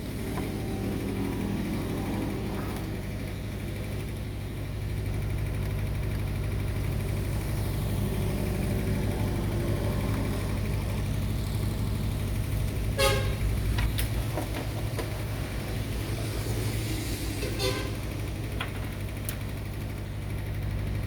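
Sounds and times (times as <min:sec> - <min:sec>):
short horn toot: 0:13.0 - 0:13.4, 0:17.4 - 0:18.1.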